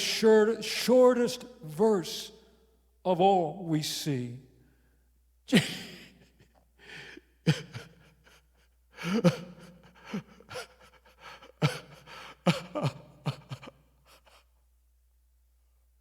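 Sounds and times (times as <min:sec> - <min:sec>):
man sobbing: 0:05.5 - 0:14.6.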